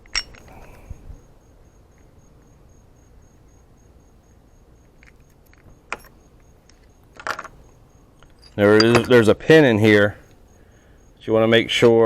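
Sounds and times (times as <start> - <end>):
faint pulsing high chirp: 9.6 - 11.7.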